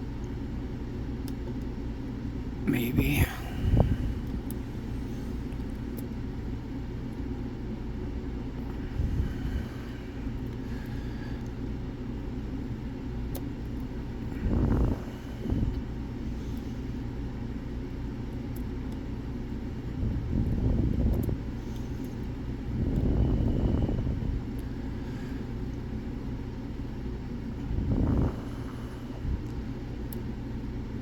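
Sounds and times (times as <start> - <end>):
low rumble: 2.5 - 6.0, 22.3 - 25.7, 27.2 - 29.6.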